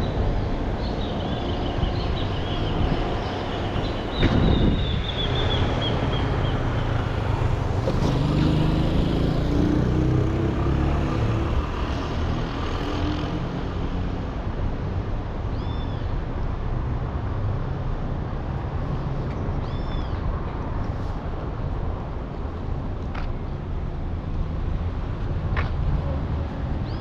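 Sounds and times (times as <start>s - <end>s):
road traffic: 0.0s - 27.0s
vehicle engine passing: 7.0s - 12.5s.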